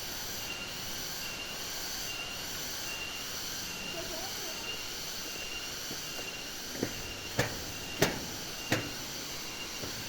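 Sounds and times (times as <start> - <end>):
high insect drone: 0.0 - 10.0
sharp knocks: 6.8 - 10.0.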